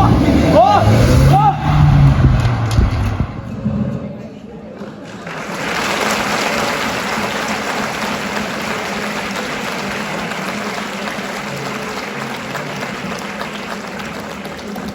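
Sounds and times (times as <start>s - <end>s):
audience applauding: 4.8s - 14.9s.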